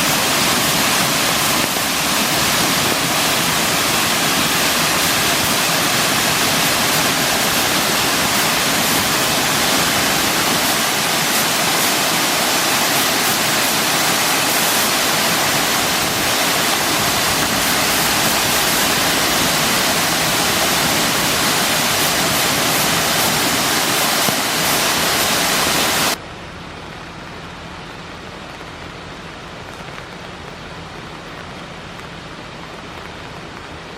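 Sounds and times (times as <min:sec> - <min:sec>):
waterfall rushing: 0:00.0 - 0:26.2.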